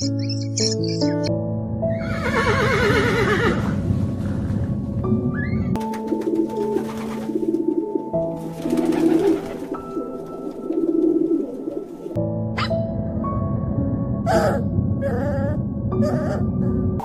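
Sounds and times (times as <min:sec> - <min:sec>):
background music with held tones: 0:00.0 - 0:17.0.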